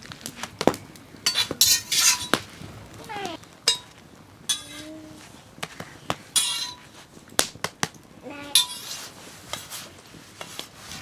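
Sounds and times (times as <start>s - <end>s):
dishes and cutlery clinking: 1.2s - 2.5s, 3.7s - 4.9s, 6.4s - 6.9s, 8.6s - 9.1s.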